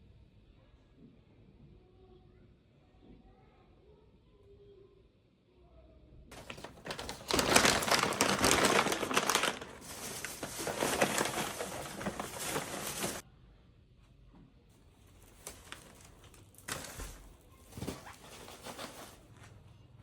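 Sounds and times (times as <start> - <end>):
crinkling rustling handling noise: 6.3 - 13.2, 15.0 - 19.6.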